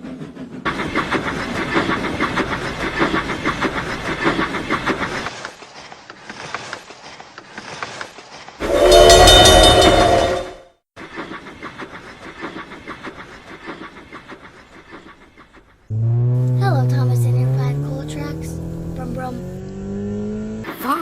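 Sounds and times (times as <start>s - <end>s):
steam locomotive chuffing: 0.0s - 7.4s, 8.6s - 19.5s
multi-tone steam whistle: 8.6s - 10.6s.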